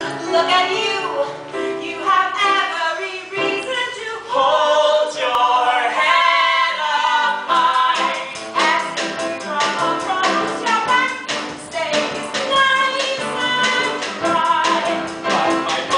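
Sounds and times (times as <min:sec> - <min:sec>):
voices singing musical number: 0:01.7 - 0:15.9
instrumental accompaniment: 0:05.2 - 0:15.9.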